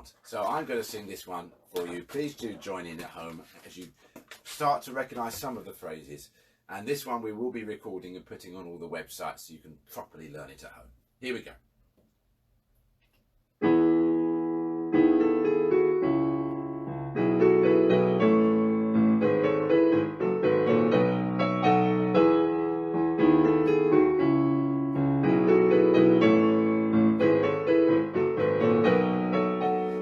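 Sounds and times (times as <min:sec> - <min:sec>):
piano keyboard chords and melody: 0:13.6 - 0:30.0.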